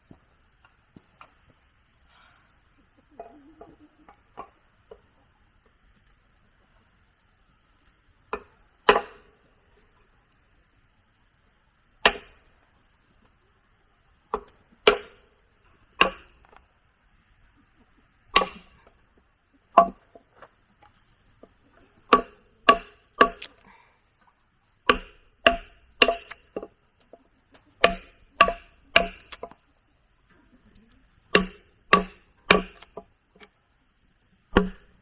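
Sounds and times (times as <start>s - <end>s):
wood being chopped: 8.9s - 9.2s, 14.9s - 15.2s, 16.0s - 16.4s, 18.4s - 18.8s, 22.1s - 23.6s, 24.9s - 26.7s, 27.8s - 29.6s, 31.3s - 33.0s, 34.5s - 35.0s.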